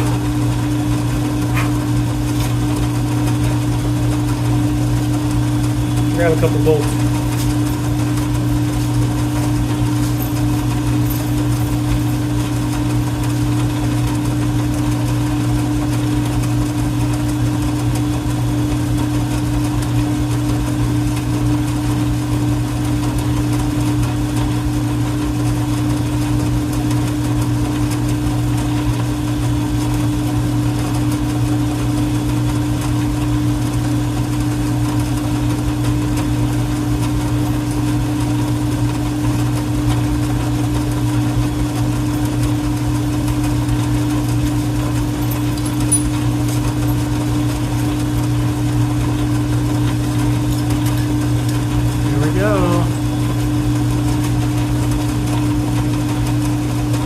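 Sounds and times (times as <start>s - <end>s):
metal lathe motor humming: 0.0s - 15.4s, 35.6s - 56.8s.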